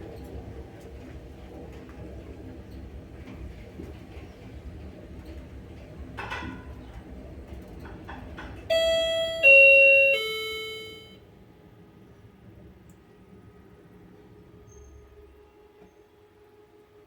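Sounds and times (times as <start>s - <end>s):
elevator chime descending tones: 8.7s - 11.2s.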